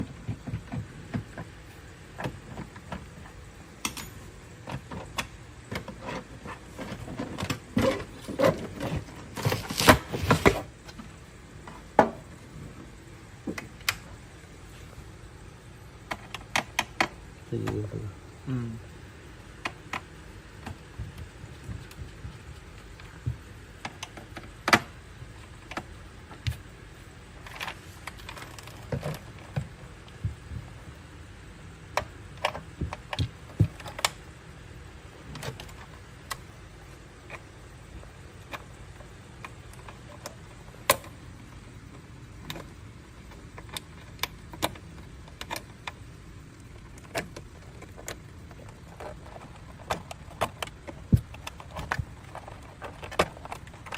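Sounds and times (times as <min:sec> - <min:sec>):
steady low hum: 0:00.0 - 0:53.9
tools clicking and rattling: 0:03.8 - 0:09.6, 0:46.8 - 0:53.9.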